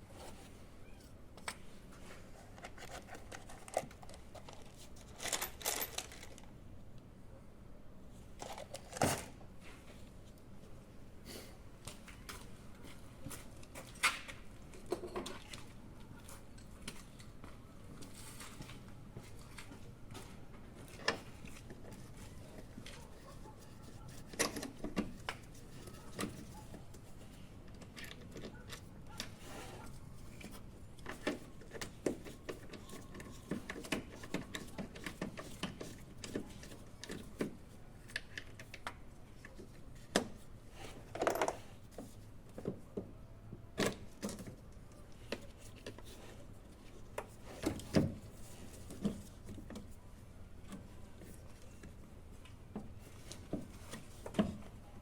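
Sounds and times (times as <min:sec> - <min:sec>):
tools and metal parts clicking: 0:02.6 - 0:06.4.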